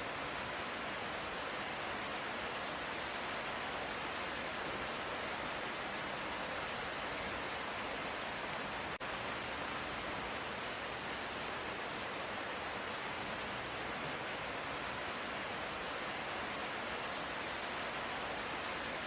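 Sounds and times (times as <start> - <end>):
steady light rain: 0.0 - 19.0.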